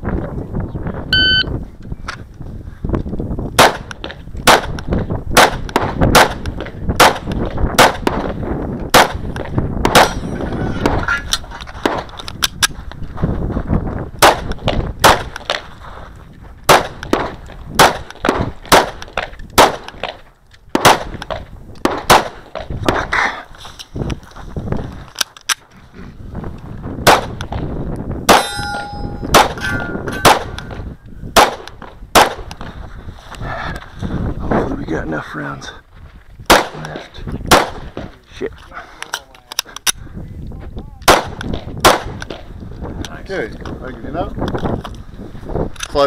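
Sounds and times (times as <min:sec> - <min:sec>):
shot timer beep: 0:01.1 - 0:01.5
pistol shots: 0:03.6 - 0:10.3, 0:14.2 - 0:15.6, 0:16.7 - 0:23.0, 0:27.0 - 0:27.6, 0:28.3 - 0:32.6, 0:36.5 - 0:38.1, 0:41.0 - 0:42.5
steel targets ringing: 0:28.3 - 0:30.8.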